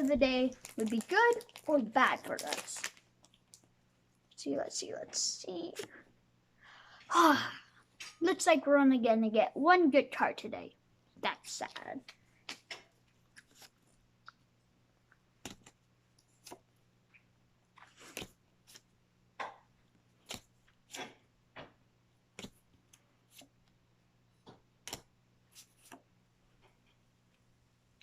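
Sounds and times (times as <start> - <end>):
cards flicking and sliding: 18.0 - 18.9, 20.2 - 21.1, 22.4 - 22.7, 24.8 - 26.0.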